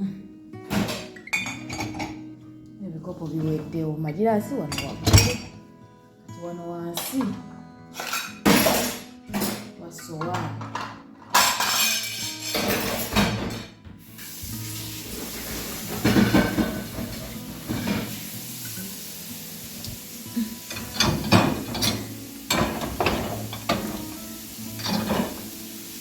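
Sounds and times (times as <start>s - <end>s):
plates clinking into dishwasher rack: 0.7s - 2.2s, 4.7s - 5.6s, 8.0s - 13.8s, 15.1s - 18.2s, 19.8s - 26.0s
steady hiss: 14.0s - 26.0s.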